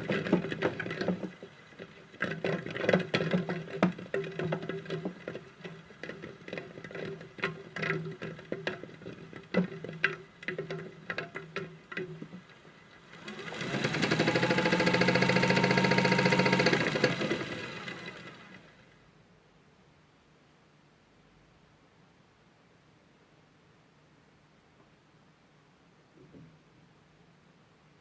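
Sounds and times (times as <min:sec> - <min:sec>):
motor whirring spin with whine: 0:13.1 - 0:18.6
small electric motor humming: 0:13.2 - 0:18.6.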